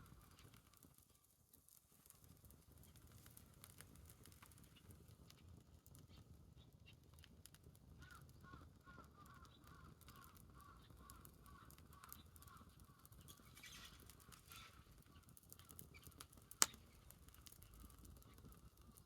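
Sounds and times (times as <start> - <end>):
bonfire crackling and popping: 0.0 - 19.0.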